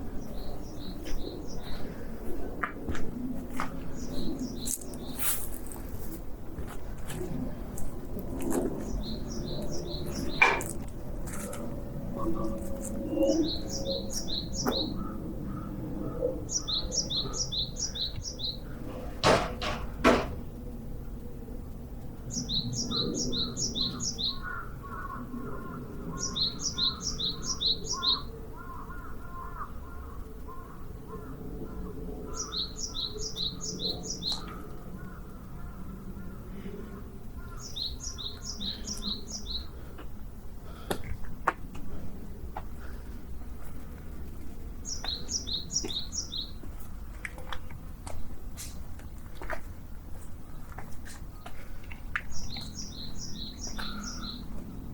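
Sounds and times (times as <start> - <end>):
sharp knocks: 18.9 - 20.4.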